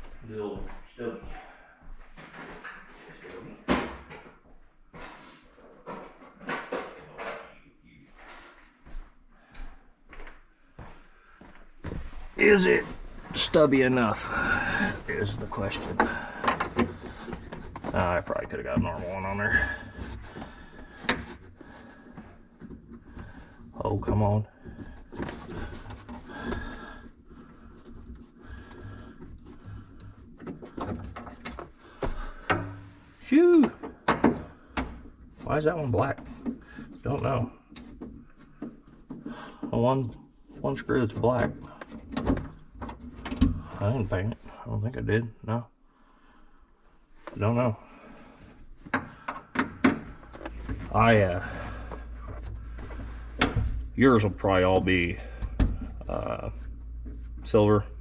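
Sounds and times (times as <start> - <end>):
screwdriver scraping and creaking: 37.7 - 40.0, 48.4 - 55.1.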